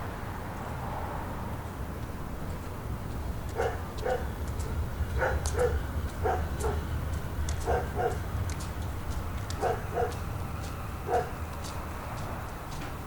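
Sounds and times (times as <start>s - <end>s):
low background rumble: 0.0s - 13.0s
dog barking: 3.5s - 4.3s, 5.2s - 6.8s, 7.6s - 8.2s, 9.6s - 10.2s, 11.0s - 11.4s.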